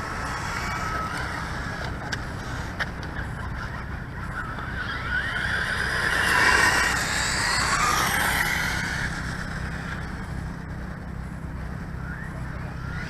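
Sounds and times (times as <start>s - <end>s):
electric motor whining: 0.0s - 3.4s, 4.2s - 10.8s.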